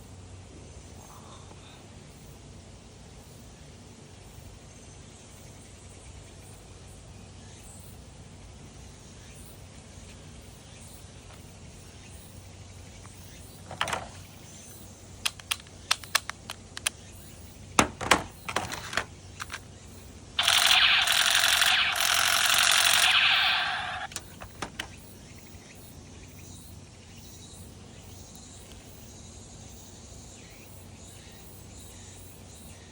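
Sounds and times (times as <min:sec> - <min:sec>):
plastic clicks of toy blaster: 0:15.2 - 0:17.0, 0:18.6 - 0:19.6, 0:20.4 - 0:25.0
toy blaster firing burst: 0:20.4 - 0:24.8.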